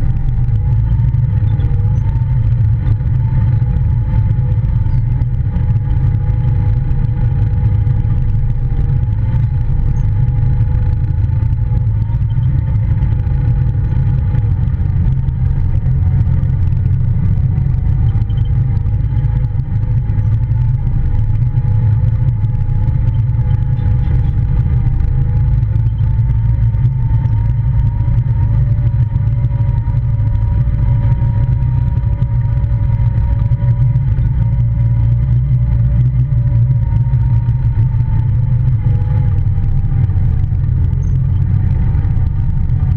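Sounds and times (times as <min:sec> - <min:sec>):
engine whine: 0:00.0 - 0:42.9
utility vehicle engine rumbling: 0:00.0 - 0:42.9.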